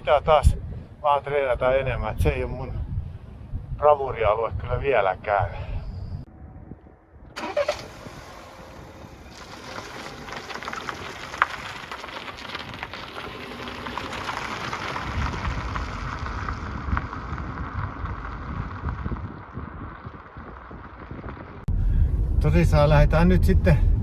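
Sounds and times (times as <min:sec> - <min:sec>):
low engine and road rumble: 0:07.3 - 0:24.0.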